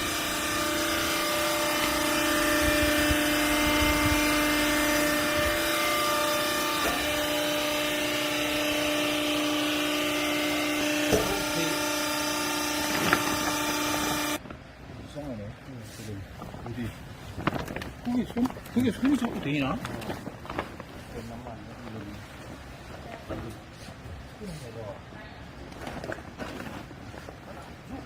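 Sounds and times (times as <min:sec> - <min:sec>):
baler machine humming: 0:00.0 - 0:14.4.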